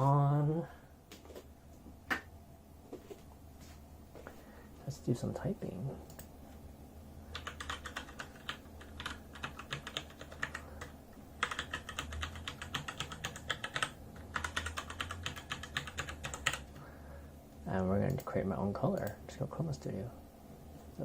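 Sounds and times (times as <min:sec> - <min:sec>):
fast typing on mechanical keyboard: 0:07.3 - 0:16.8.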